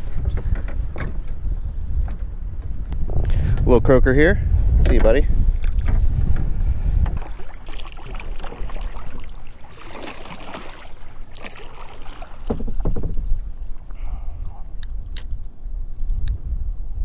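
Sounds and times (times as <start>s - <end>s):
wind on microphone: 0.0s - 17.0s
water splashing around kayak: 4.8s - 15.6s.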